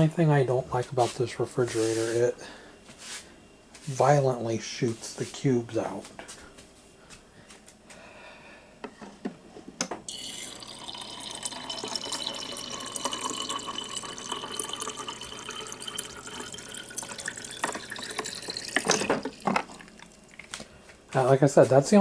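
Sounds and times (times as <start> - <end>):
water dispenser running into cup: 10.0 - 20.5.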